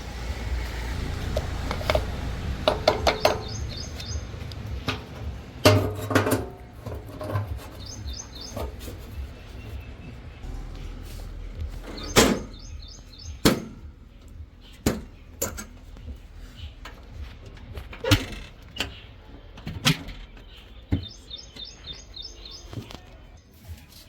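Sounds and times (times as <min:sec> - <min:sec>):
low steady rumble: 0:00.0 - 0:07.0, 0:09.1 - 0:19.2
bird chirping: 0:00.7 - 0:05.5, 0:06.7 - 0:23.4.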